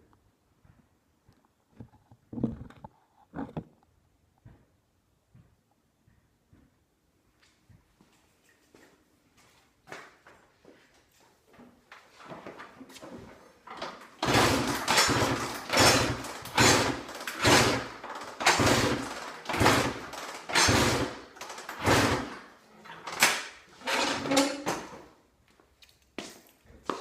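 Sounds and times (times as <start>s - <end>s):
dirt bike being kick-started: 13.7s - 25.0s.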